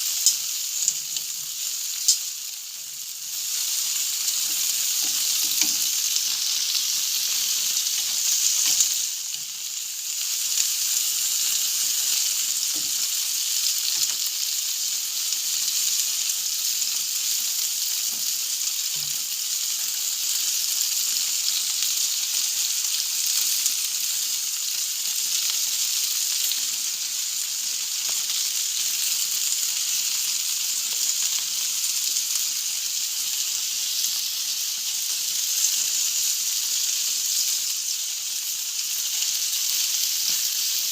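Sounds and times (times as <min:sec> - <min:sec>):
food sizzling on a grill: 0:00.0 - 0:40.9.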